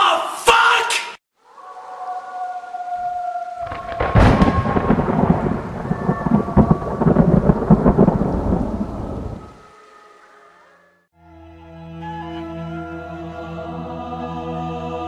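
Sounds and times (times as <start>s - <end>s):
thunder crack and rumble: 3.6s - 9.6s.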